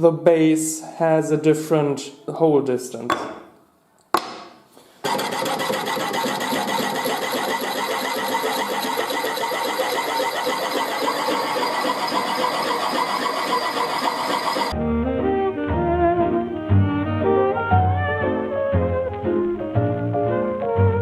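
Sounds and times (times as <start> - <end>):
small motor tool buzzing: 5.0 - 14.7.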